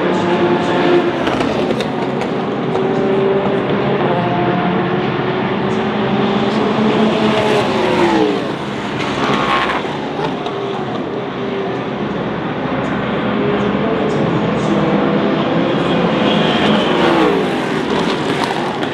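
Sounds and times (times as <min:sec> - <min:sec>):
race cars passing at speed: 0:00.0 - 0:18.9.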